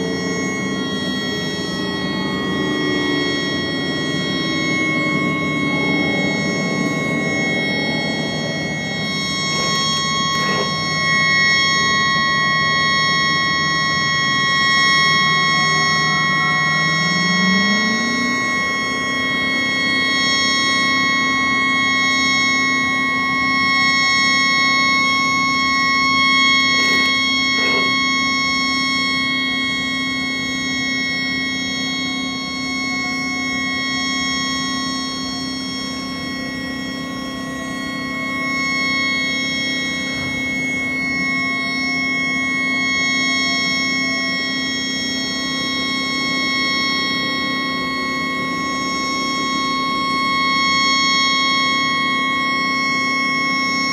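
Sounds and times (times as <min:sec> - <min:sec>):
high-pitched horn whine: 0:00.0 - 0:53.9
low drone: 0:00.0 - 0:53.9.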